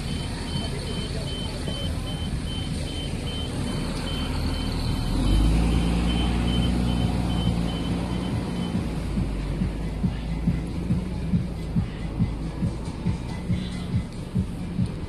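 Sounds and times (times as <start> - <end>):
high electronic beeping: 0.0 - 8.8
heavy vehicle engine rumble: 0.0 - 15.0.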